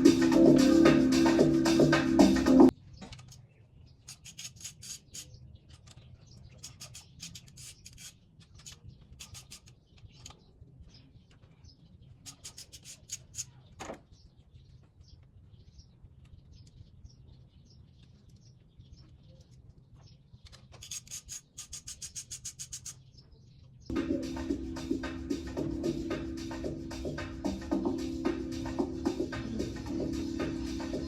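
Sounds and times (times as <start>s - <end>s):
faint scraping and rubbing: 3.2s - 10.3s, 12.2s - 13.7s.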